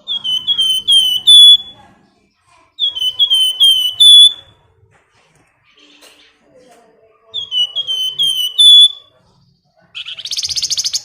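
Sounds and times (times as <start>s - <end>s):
songbird whistling: 0.0s - 1.8s, 2.8s - 4.6s, 7.3s - 9.2s, 10.0s - 11.0s.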